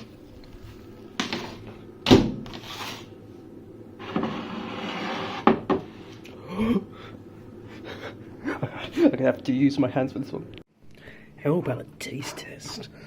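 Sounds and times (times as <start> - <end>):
short scrape: 2.5 - 3.1, 4.0 - 5.5.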